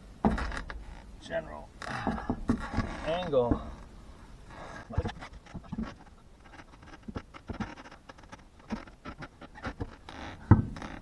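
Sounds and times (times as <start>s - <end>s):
metal scraping and knocking: 0.2s - 1.2s, 1.8s - 3.9s.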